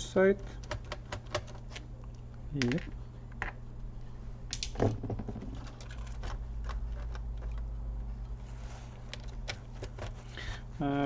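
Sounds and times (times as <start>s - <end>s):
small laptop parts clicking: 0.6s - 1.8s, 5.5s - 7.7s.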